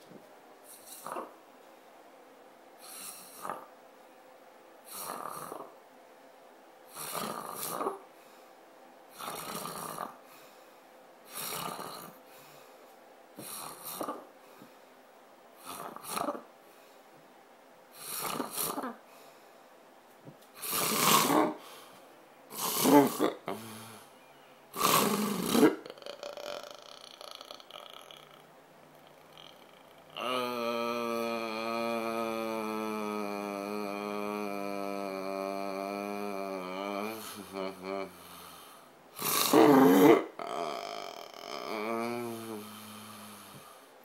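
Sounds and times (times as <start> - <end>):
person snoring: 0.7 - 1.4, 2.8 - 3.7, 4.9 - 5.8, 6.9 - 8.0, 9.1 - 10.2, 11.3 - 12.2, 13.4 - 14.3, 15.6 - 16.5, 18.0 - 19.0, 20.6 - 21.9, 22.5 - 24.1, 24.8 - 43.9.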